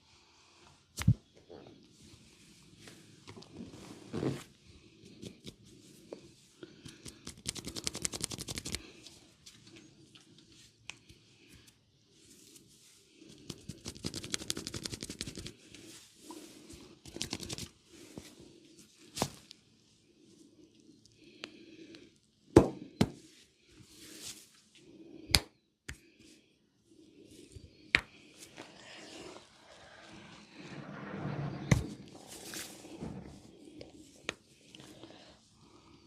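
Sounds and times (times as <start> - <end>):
hands rubbing on skin: 7.0 - 8.9, 12.4 - 18.3.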